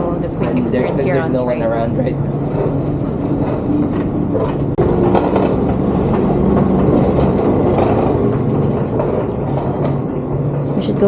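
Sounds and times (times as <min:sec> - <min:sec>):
train rumbling on tracks: 0:00.0 - 0:11.0
wheel clicks: 0:02.2 - 0:10.9.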